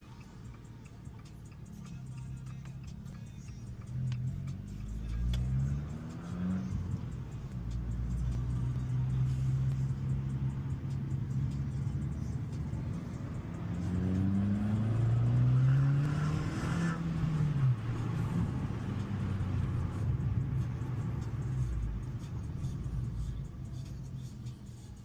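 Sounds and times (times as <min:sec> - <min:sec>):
car engine revving and idling: 0:00.0 - 0:25.0.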